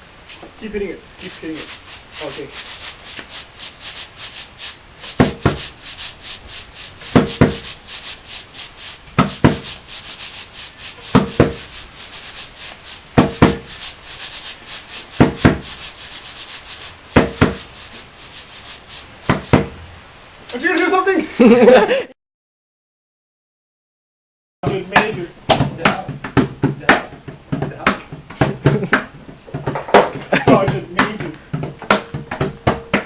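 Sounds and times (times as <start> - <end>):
shaker-like strokes: 1.1 - 19.8.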